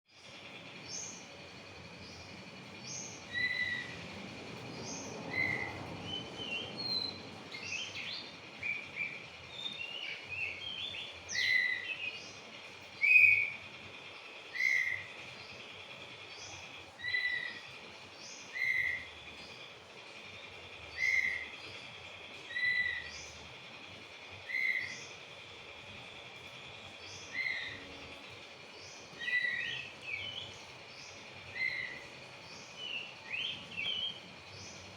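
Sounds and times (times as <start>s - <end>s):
bird calling: 3.2s - 4.0s, 29.1s - 34.8s.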